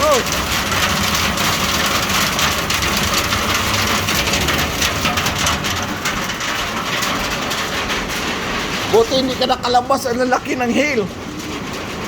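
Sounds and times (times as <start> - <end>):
hailstones clattering: 0.0 - 12.0.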